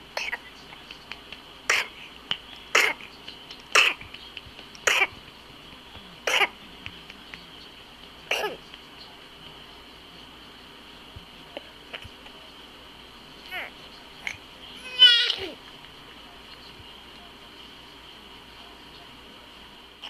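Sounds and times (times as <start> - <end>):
person coughing hard: 3.7 - 4.0.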